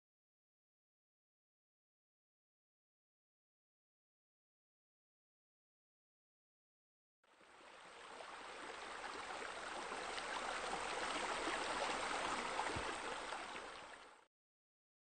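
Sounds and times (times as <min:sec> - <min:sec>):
small waterfall rushing: 0:07.3 - 0:14.3.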